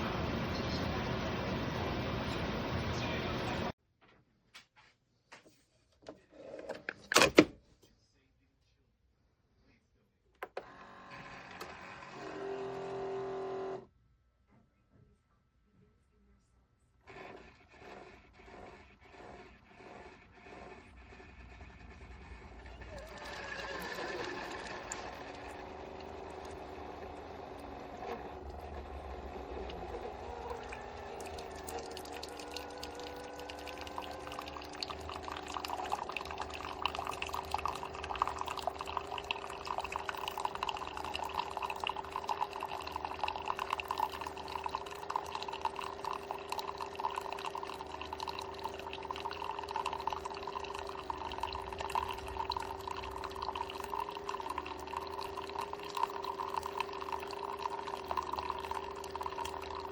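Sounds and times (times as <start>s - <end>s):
coffee maker pump hum: 0.0s - 3.8s, 10.4s - 13.9s, 17.1s - 59.9s
coffee streaming and splashing: 22.1s - 59.9s.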